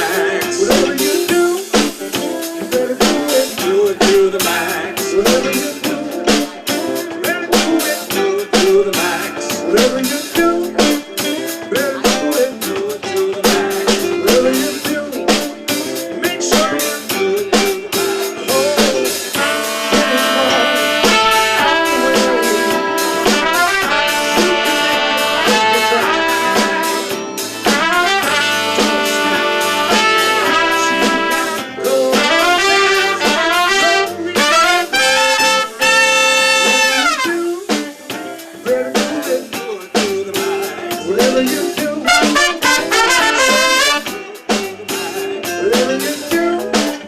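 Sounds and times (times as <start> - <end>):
live band playing: 0.0 - 47.0
long held chords: 19.4 - 34.3.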